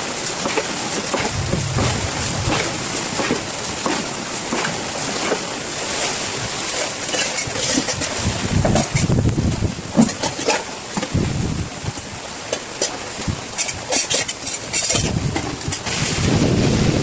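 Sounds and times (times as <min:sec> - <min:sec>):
heavy rain falling: 0:00.0 - 0:17.0
wind gust on microphone: 0:01.1 - 0:04.3, 0:07.9 - 0:10.0, 0:11.1 - 0:11.9, 0:14.9 - 0:17.0.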